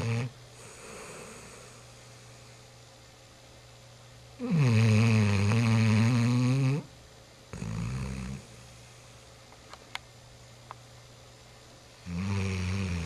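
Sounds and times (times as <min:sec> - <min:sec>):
dog snoring: 0:00.0 - 0:01.9, 0:04.4 - 0:06.9, 0:07.5 - 0:08.6, 0:12.0 - 0:13.0.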